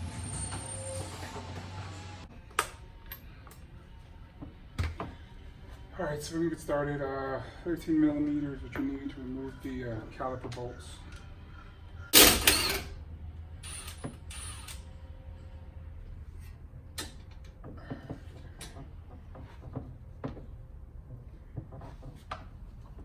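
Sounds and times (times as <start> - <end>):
metal tools clicking and clanking: 12.2 - 13.0.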